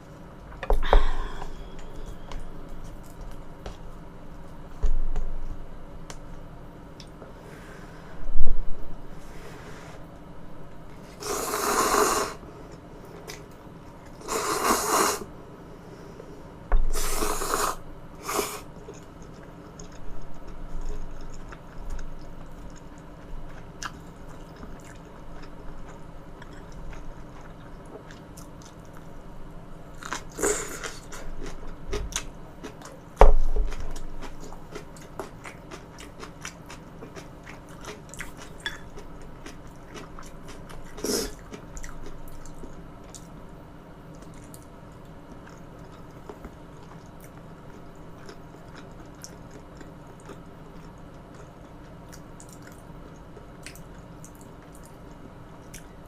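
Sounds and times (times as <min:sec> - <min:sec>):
close chewing and biting: 0:30.0 - 0:43.3.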